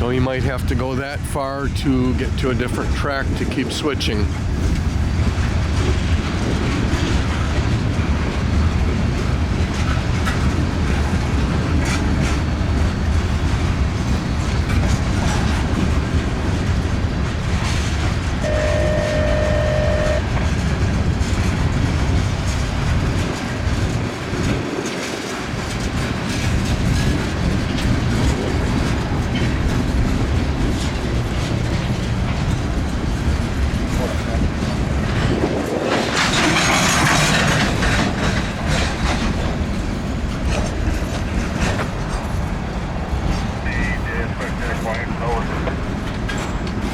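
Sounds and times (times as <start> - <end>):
freight train rumbling past: 0.0 - 46.9
wheels clacking over rail joints: 4.3 - 43.6
short steady tone: 18.4 - 20.3.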